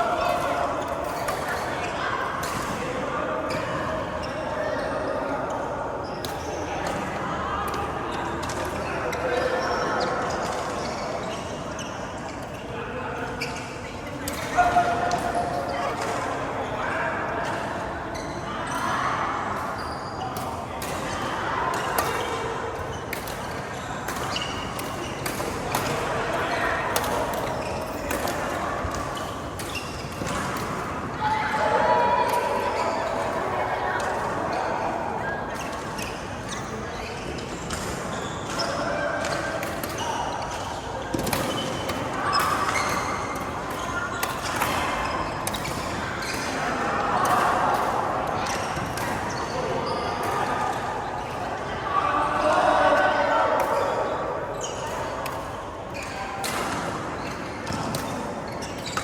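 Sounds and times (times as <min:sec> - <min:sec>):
background chatter: 0:00.0 - 0:58.8
murmur of voices: 0:00.0 - 0:59.0
shoes squeaking on court floor: 0:13.4 - 0:14.6, 0:22.9 - 0:26.2, 0:27.0 - 0:31.0, 0:35.2 - 0:47.4, 0:53.7 - 0:59.0.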